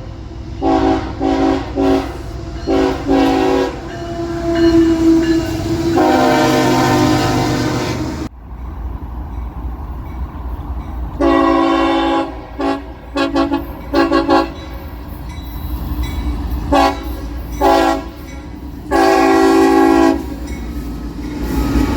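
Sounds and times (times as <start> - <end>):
locomotive horn blasts and toots: 0.0 - 8.3, 11.2 - 14.9, 16.7 - 18.3, 18.9 - 20.4.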